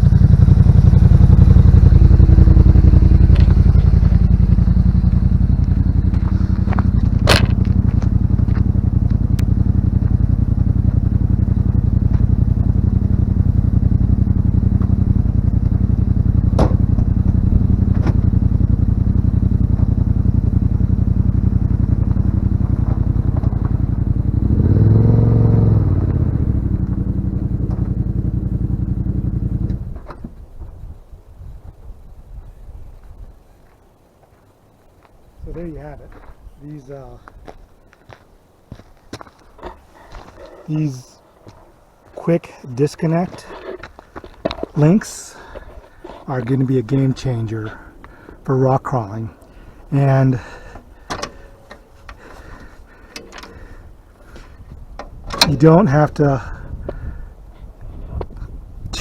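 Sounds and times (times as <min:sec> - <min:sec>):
engine running at low speed: 0:00.0 - 0:32.6, 0:33.2 - 0:59.0
knocks on rock: 0:16.6 - 0:17.1.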